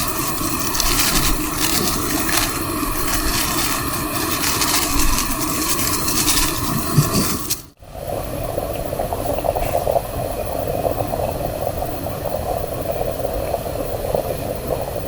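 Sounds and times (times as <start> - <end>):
rustling: 0.0 - 7.8
gas stove burner roaring: 0.0 - 15.0.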